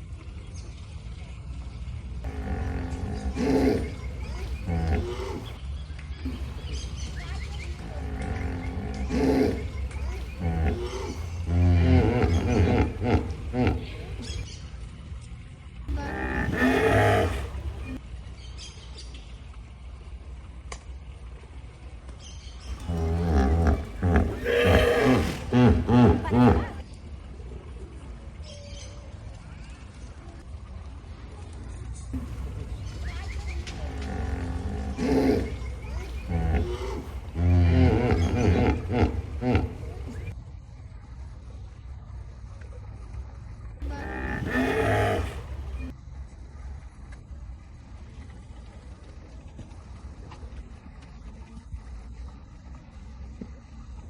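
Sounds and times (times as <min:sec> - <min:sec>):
hippopotamus low rumble: 0:00.0 - 0:14.6, 0:15.9 - 0:18.0, 0:22.5 - 0:28.1, 0:30.4 - 0:43.0, 0:43.8 - 0:46.0
hippopotamus honking call: 0:02.3 - 0:05.6, 0:06.3 - 0:14.4, 0:15.9 - 0:18.0, 0:22.7 - 0:26.8, 0:32.2 - 0:40.3, 0:43.8 - 0:45.9
hippopotamus honking grunts: 0:02.3 - 0:05.6, 0:06.3 - 0:14.4, 0:15.9 - 0:18.0, 0:22.7 - 0:26.8, 0:32.2 - 0:40.3, 0:43.8 - 0:45.9.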